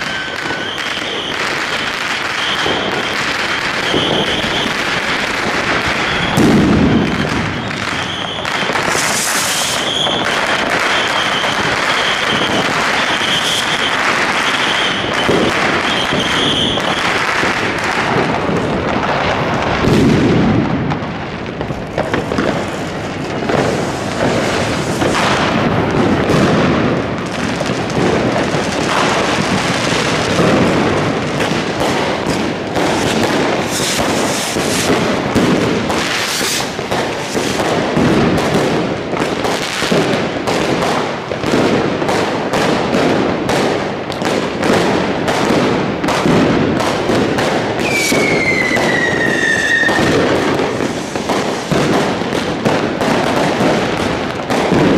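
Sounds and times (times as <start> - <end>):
firecracker bangs and crackling: 0.0 - 54.9
heavy firework booms: 0.0 - 54.9
steady high whistle: 7.0 - 15.2, 47.8 - 50.0.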